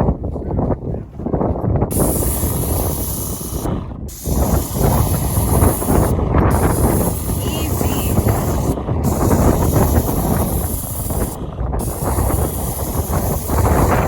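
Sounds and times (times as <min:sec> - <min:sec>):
wind rumble on microphone: 0:00.0 - 0:14.0
paint sprayer hissing: 0:01.9 - 0:14.0.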